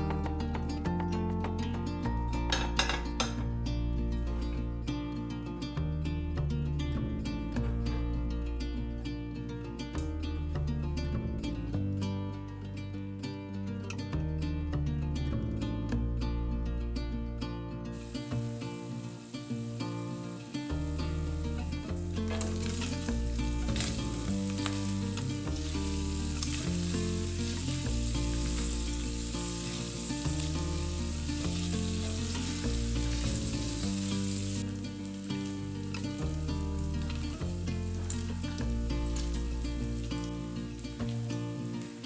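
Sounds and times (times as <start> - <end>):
food sizzling in a pan: 0.0 - 3.5, 17.9 - 42.0
music with stepping bass line: 0.0 - 41.8.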